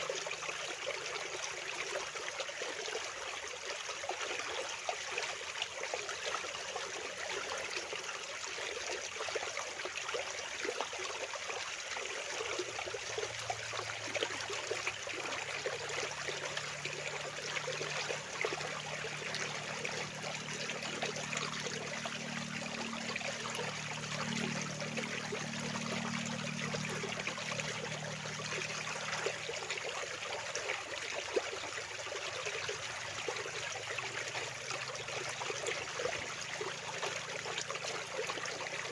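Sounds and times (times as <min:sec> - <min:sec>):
water rushing: 0:12.2 - 0:38.9
faint low hum: 0:13.0 - 0:30.8.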